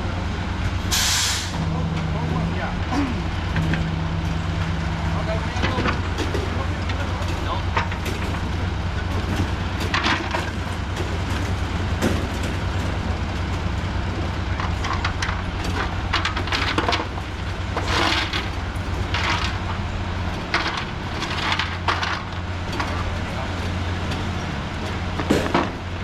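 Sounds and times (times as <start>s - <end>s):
heavy engine running: 0.0s - 26.0s
rough scraping and crunching: 14.6s - 23.4s.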